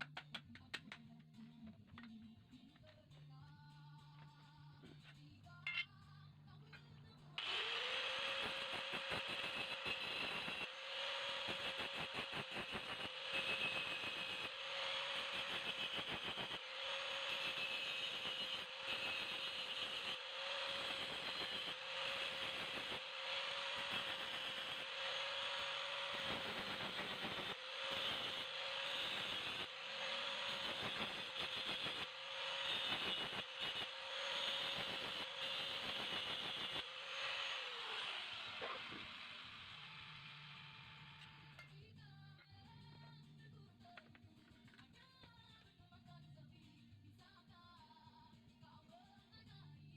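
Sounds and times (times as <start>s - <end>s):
angle grinder grinding steel: 7.4s - 41.6s.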